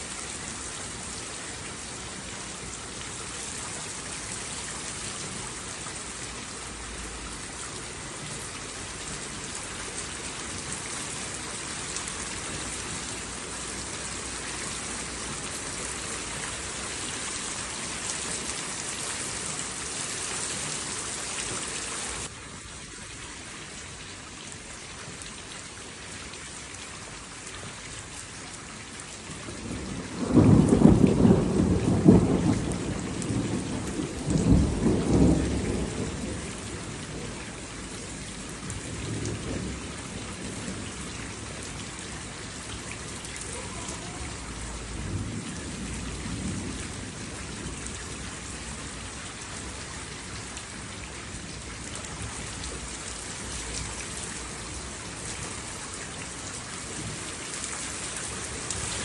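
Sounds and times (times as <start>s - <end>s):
steady rain falling: 0.0s - 59.0s
thunder rumbling: 29.6s - 42.2s, 43.5s - 48.2s.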